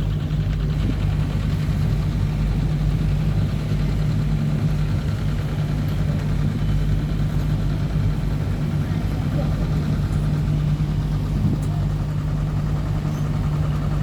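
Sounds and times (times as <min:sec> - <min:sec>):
boat engine humming: 0:00.0 - 0:14.0.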